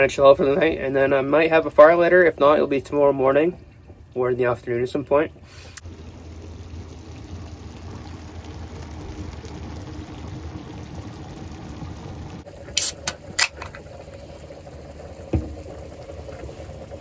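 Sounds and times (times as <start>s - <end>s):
pot of food simmering: 5.8s - 17.0s.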